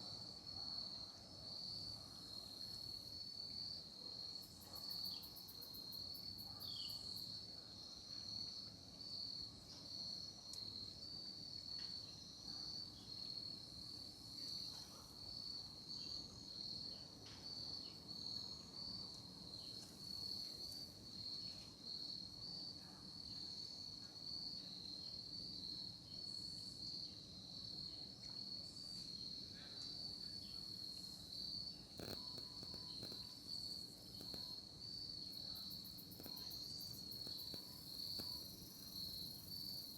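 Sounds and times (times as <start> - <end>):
crickets trilling: 0.7 - 39.9.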